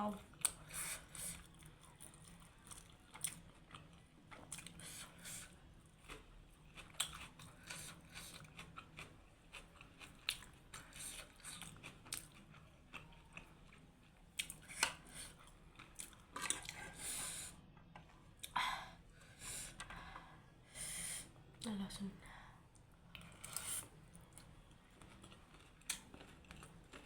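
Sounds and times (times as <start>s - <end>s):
chewing and biting food: 0.2s - 17.0s, 23.1s - 27.0s.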